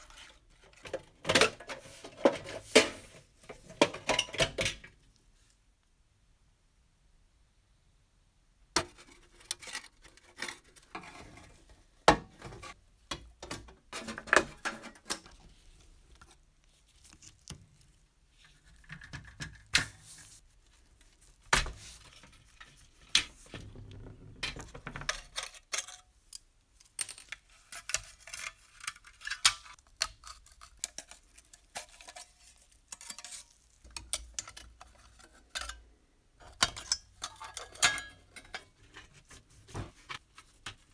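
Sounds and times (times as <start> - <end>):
tin toy parts clinking and scraping: 25.2 - 35.8, 36.4 - 39.4.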